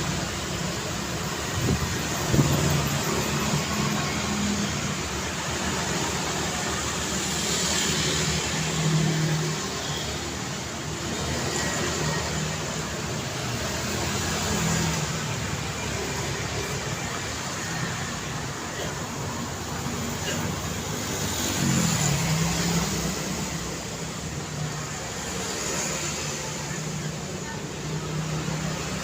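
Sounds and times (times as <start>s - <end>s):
city street traffic: 0.0s - 29.0s.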